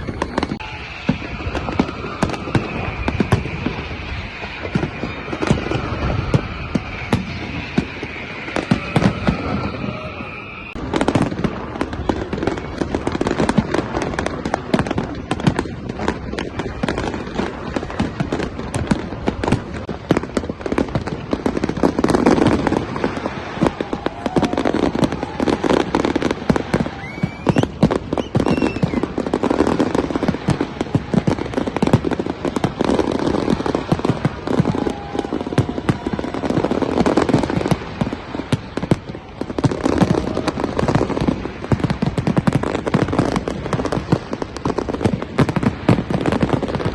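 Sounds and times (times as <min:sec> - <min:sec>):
crowd voices: 0:00.0 - 0:46.9
fireworks bangs and crackles: 0:00.0 - 0:46.9.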